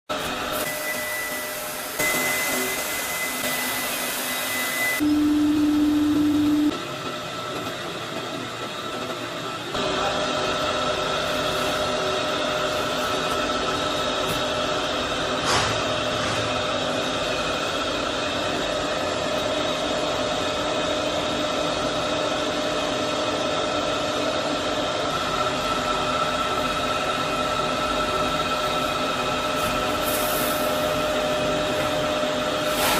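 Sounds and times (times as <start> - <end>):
factory machinery hum and hiss: 0.1 - 32.9
machine whining tones: 0.2 - 21.9
constant humming tones: 5.0 - 8.7.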